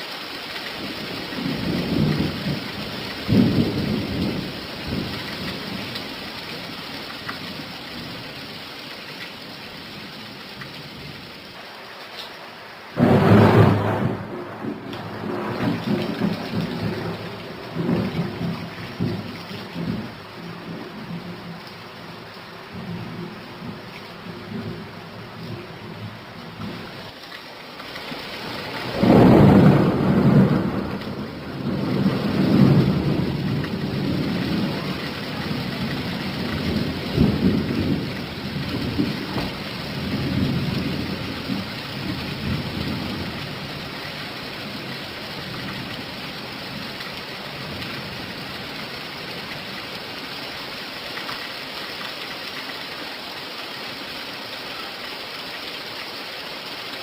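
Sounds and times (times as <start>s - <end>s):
steady rain: 0.0s - 57.0s
thunder rumbling: 0.8s - 6.7s, 12.9s - 27.0s, 28.3s - 48.6s.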